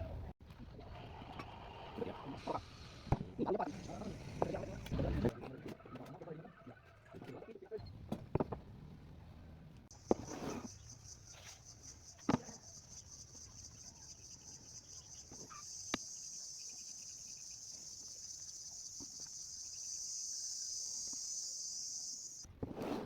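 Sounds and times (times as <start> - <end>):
insects trilling: 9.9 - 22.5.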